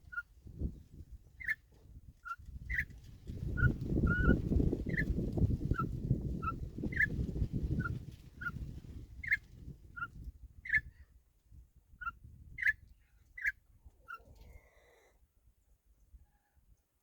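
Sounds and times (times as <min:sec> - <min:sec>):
bird chirping: 0:01.4 - 0:01.6.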